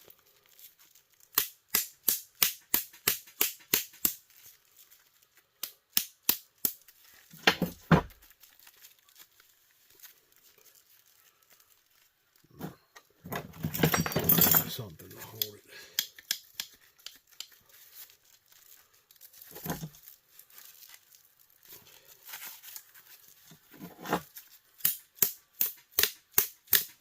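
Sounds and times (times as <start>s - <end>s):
metal clatter: 12.6s - 14.8s.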